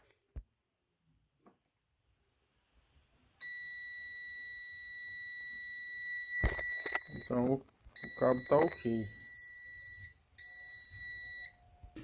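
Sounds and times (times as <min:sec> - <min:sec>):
multimeter continuity beep: 0:03.4 - 0:12.0.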